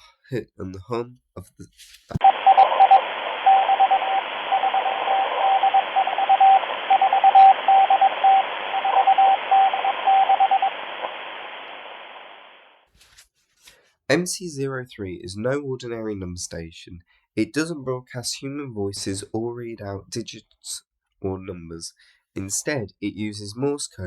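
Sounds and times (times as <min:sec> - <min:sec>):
morse code beeps: 0:02.2 - 0:10.8
radio static hiss: 0:02.2 - 0:12.8.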